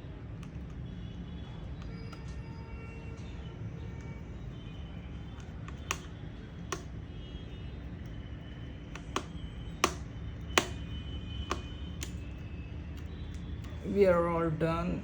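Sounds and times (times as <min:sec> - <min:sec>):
clicks and taps of hard parts: 0:05.3 - 0:07.0, 0:08.9 - 0:12.2.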